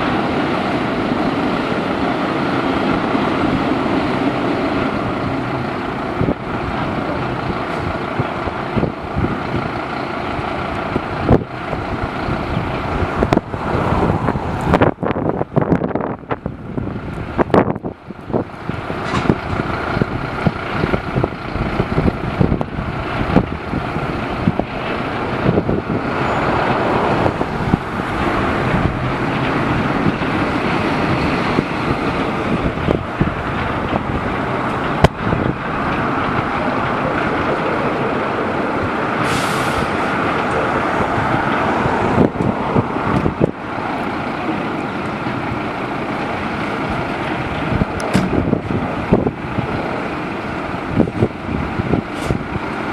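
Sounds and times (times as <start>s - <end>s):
fire truck diesel engines rumbling: 0.0s - 52.9s
road noise: 0.0s - 52.9s
air brakes hissing: 39.1s - 40.4s, 52.1s - 52.5s.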